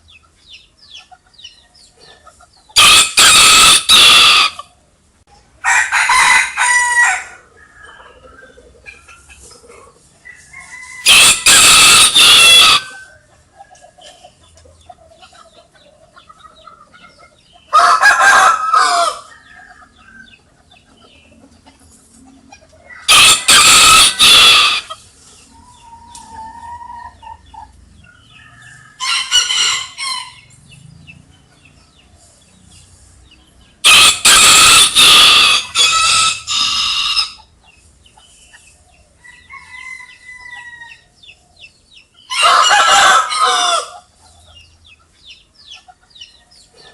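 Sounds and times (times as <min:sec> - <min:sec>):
hens clucking softly: 0:00.0 - 0:05.8, 0:07.0 - 0:30.7
rooster crowing: 0:02.8 - 0:04.6, 0:05.6 - 0:08.6, 0:10.2 - 0:13.3, 0:17.7 - 0:20.4, 0:22.8 - 0:25.0, 0:28.1 - 0:30.6, 0:33.8 - 0:37.4, 0:39.2 - 0:41.2, 0:42.3 - 0:44.1.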